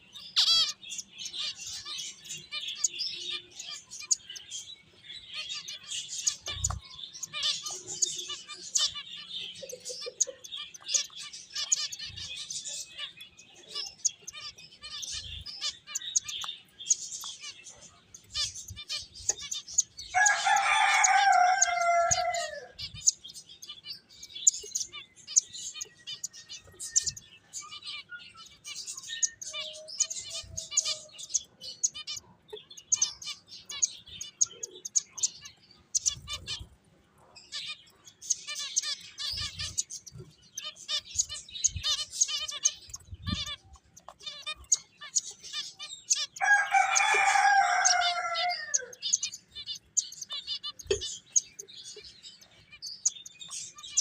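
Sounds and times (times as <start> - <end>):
finches chirping: 0.0 - 54.0
rooster crowing: 20.1 - 22.8, 46.4 - 49.0.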